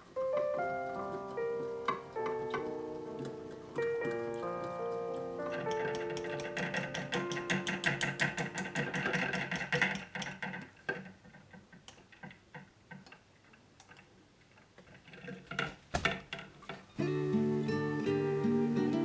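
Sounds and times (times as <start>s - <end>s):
whisk clicking against a bowl: 1.1s - 10.5s.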